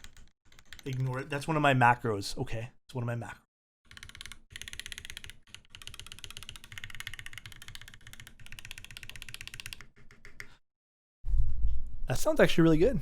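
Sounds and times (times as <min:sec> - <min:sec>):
fast typing on mechanical keyboard: 0:00.0 - 0:01.3, 0:03.9 - 0:10.5.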